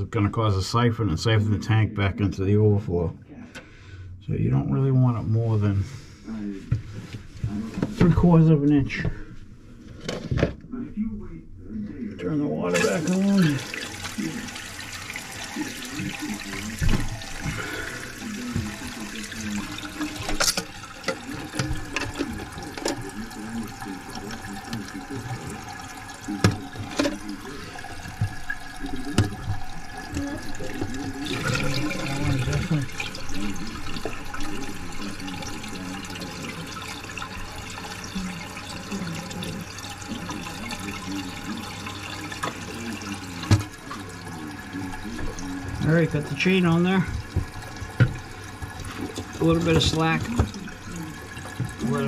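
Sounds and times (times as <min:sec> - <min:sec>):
water running into toilet tank: 0:12.6 - 0:52.0
clicks and knocks in tank: 0:28.1 - 0:31.8, 0:43.4 - 0:43.8, 0:47.1 - 0:50.7.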